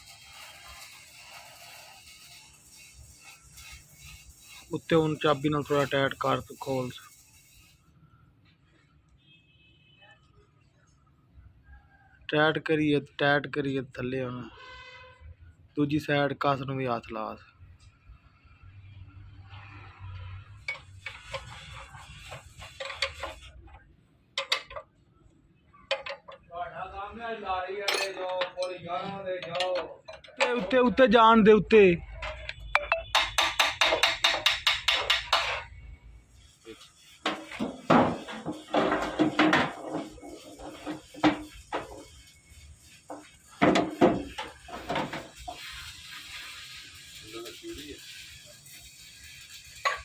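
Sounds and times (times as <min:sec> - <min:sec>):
metal knocks and clanks: 0:27.9 - 0:30.8, 0:32.2 - 0:35.7, 0:37.2 - 0:42.2, 0:43.1 - 0:45.8
sharp metallic taps: 0:32.3 - 0:35.6.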